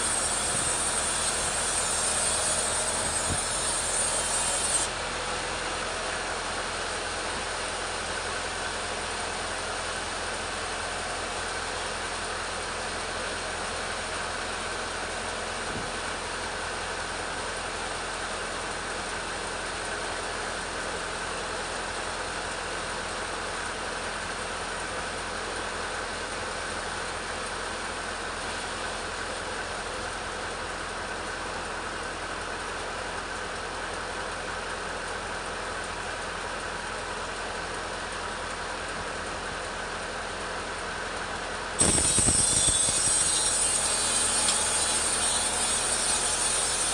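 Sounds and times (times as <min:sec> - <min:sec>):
chainsaw engine running: 0:41.8 - 0:46.9.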